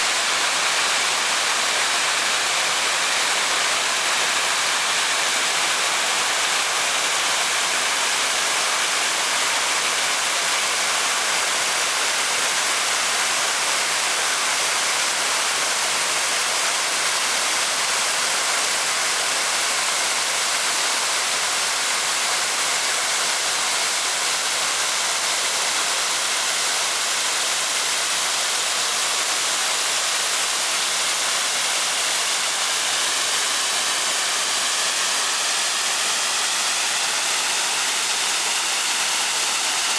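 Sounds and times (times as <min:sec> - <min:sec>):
waterfall rushing: 0:00.0 - 0:16.4, 0:26.8 - 0:39.9.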